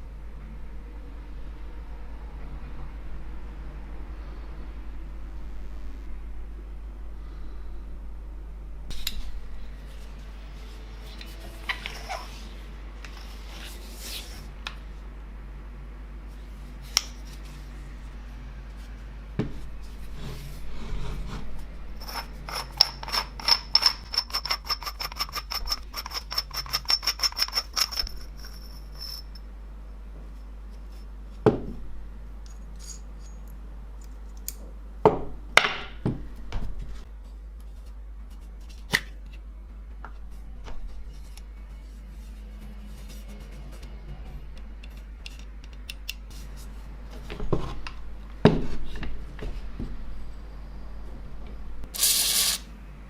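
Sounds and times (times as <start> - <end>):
faint high ringing: 27.0 - 31.1.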